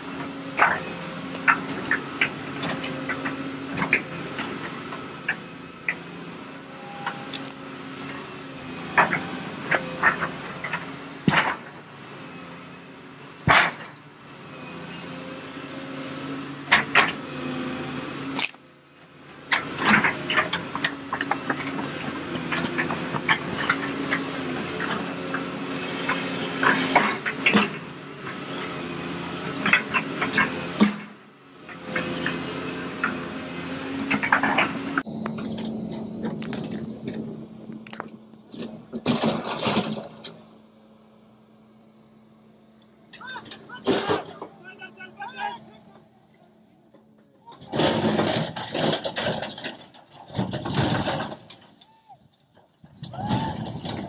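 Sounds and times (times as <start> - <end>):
heavy machine engine running: 0.0 - 51.8, 52.4 - 54.0
sharp clanks and knocks: 0.1 - 6.0, 8.8 - 11.8, 13.4 - 14.0, 16.6 - 17.3, 19.4 - 28.5, 29.5 - 40.4, 43.1 - 44.7, 46.9 - 51.8
loud clatter: 47.6 - 51.8.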